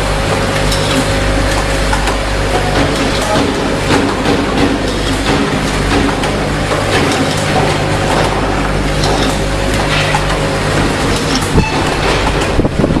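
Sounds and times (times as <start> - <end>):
air cylinders clicking and hissing: 0.0 - 13.0
steady mechanical hum: 0.0 - 13.0.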